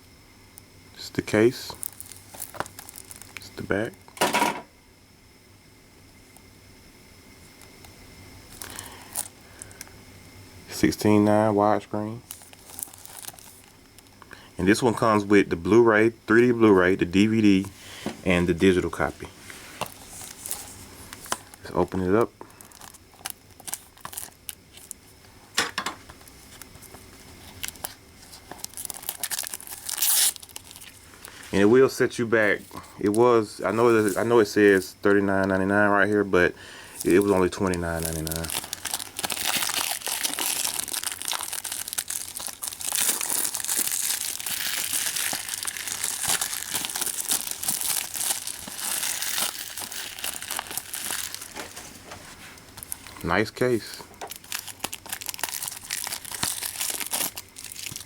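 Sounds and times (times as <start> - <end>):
plastic crinkling burst: 1.7 - 3.5, 12.2 - 13.8, 19.8 - 25.0, 25.6 - 31.6, 37.0 - 58.0
plastic wrapping crackling: 1.7 - 3.5, 12.2 - 14.1, 19.8 - 25.0, 26.3 - 31.7, 37.0 - 58.0.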